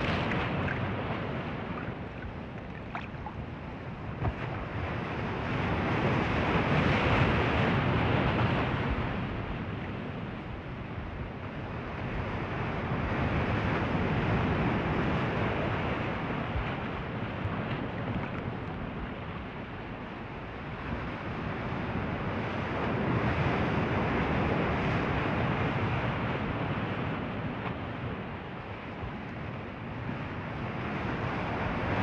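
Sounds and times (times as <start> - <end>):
ocean waves breaking: 0.0 - 11.1.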